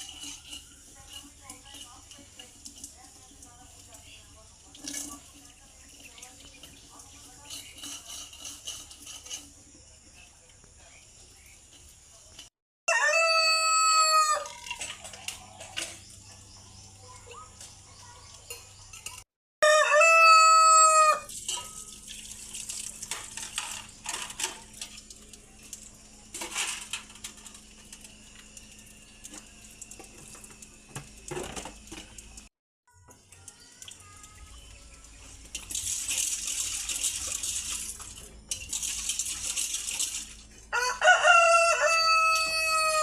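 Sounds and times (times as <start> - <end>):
rooster crowing: 12.9 - 14.6, 19.6 - 21.3, 40.7 - 43.0.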